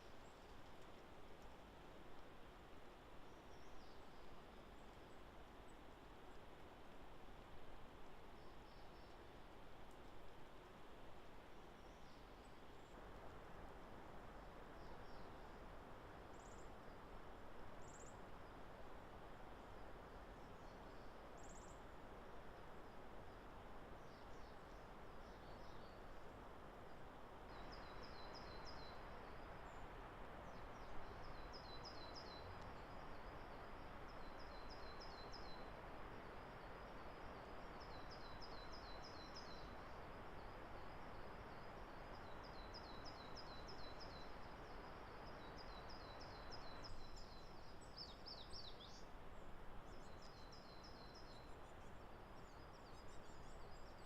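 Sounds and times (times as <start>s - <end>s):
faint steady hiss: 0.0s - 54.0s
songbird chirping: 24.0s - 54.0s.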